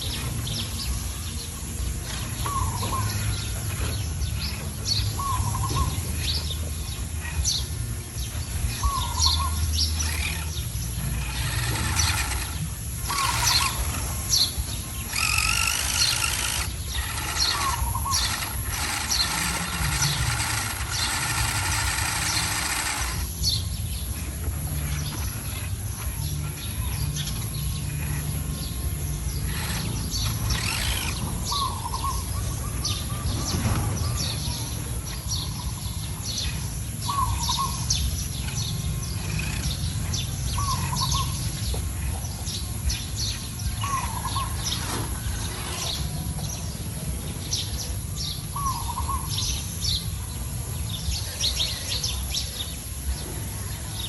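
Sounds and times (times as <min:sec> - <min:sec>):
birds chirping and calling: 0:00.0 - 0:54.0.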